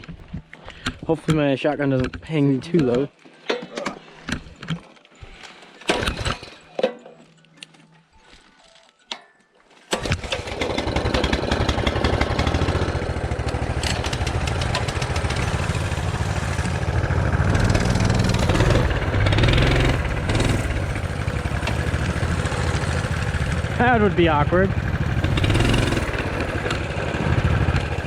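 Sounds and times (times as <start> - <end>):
small trail bike engine running: 9.9 - 28.0.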